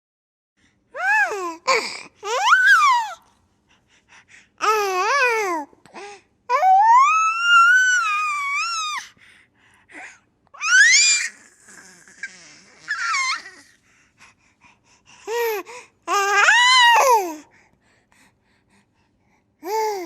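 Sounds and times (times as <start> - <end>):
baby squealing: 2.3 - 3.2, 10.6 - 13.7.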